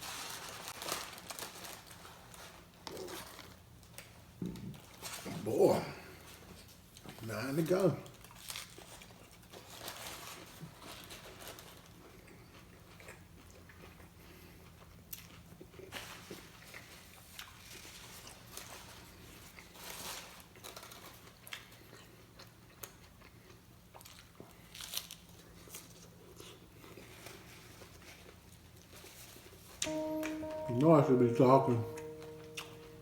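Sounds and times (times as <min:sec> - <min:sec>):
crunchy taco chewing: 0:08.0 - 0:29.2.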